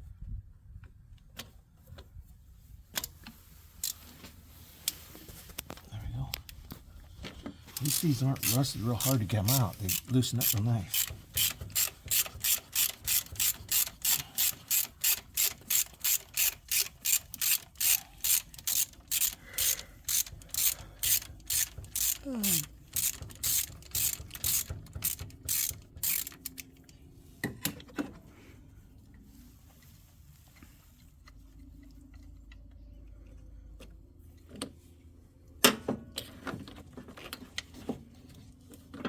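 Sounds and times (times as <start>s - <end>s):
socket wrench ratchet clicking: 7.8s - 26.9s.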